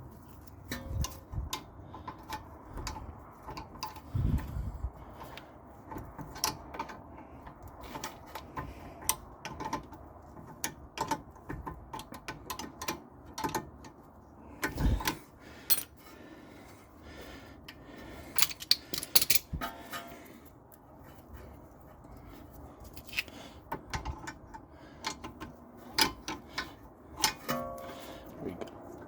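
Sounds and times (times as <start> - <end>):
metal tools clattering: 14.8 - 16.0, 18.3 - 20.2
metal hand tools clinking: 18.3 - 20.1.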